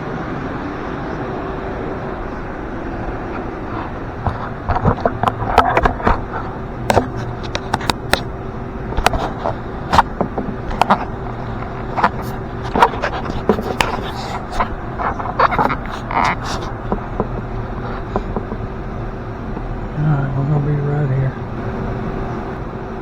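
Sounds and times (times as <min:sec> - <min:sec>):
steady low hum: 0:00.0 - 0:23.0
hands and tools handling parts: 0:03.3 - 0:08.3, 0:08.9 - 0:18.7.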